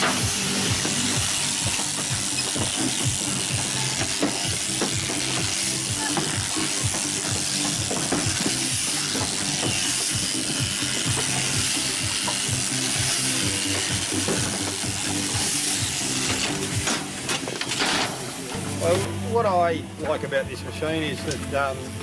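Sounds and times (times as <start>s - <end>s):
shearing handpiece hissing: 0.0s - 19.0s
metal frame clanking and rattling: 16.2s - 19.0s.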